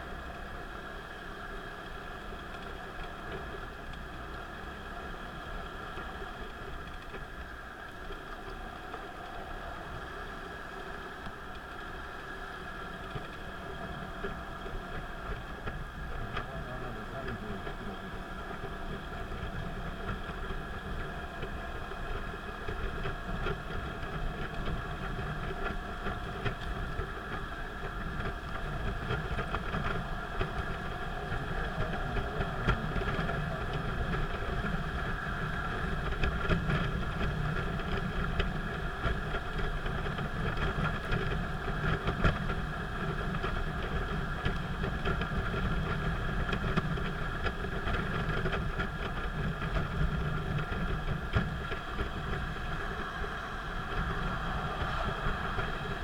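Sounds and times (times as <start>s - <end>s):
car engine and road noise: 0.0s - 56.0s.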